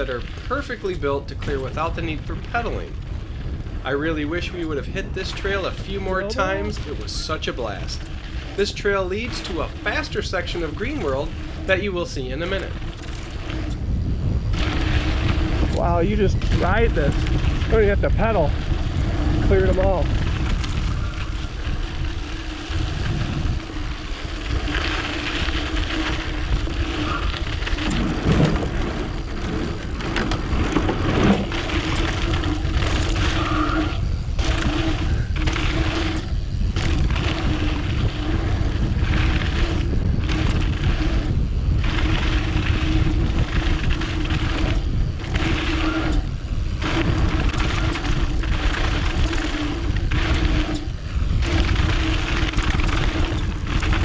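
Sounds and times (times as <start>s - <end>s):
bike tyres rumbling on dirt: 0.0s - 54.0s.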